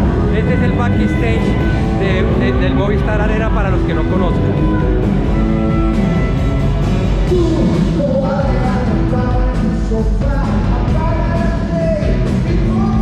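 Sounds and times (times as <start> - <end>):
drums: 0.0 - 13.0
rock music: 0.0 - 13.0
person singing: 7.2 - 13.0.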